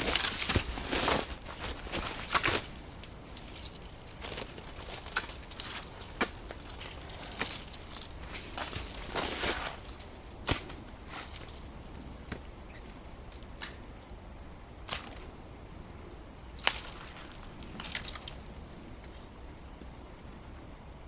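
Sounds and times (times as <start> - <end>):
skis crunching through snow: 0.0 - 10.1.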